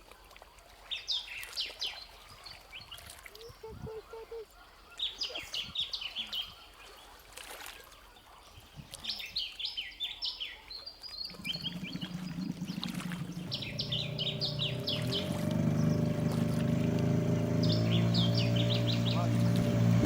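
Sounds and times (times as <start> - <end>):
songbird singing: 0.9 - 7.1, 8.7 - 20.0
motor droning: 11.3 - 20.0.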